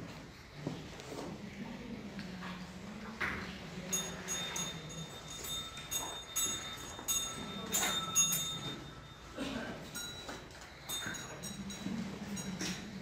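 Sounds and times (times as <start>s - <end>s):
small metal bells jingling: 3.8s - 13.0s.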